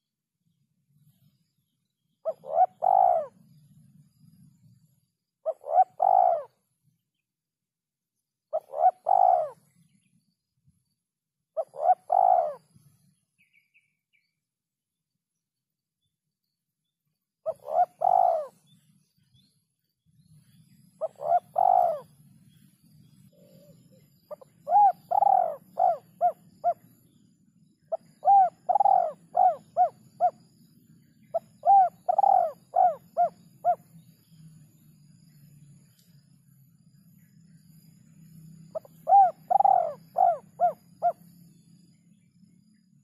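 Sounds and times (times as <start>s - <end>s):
dove cooing: 2.2s - 3.5s, 5.5s - 6.6s, 8.5s - 9.7s, 11.6s - 12.7s, 17.5s - 18.6s, 21.0s - 22.2s, 23.3s - 27.2s, 27.9s - 30.5s, 31.3s - 33.9s, 38.7s - 41.2s.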